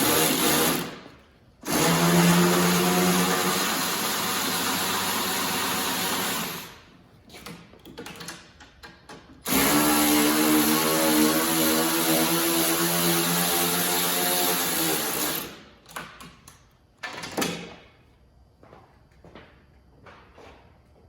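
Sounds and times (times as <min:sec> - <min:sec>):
cordless power tool spinning: 0:00.0 - 0:01.0, 0:01.6 - 0:06.8, 0:09.5 - 0:15.6.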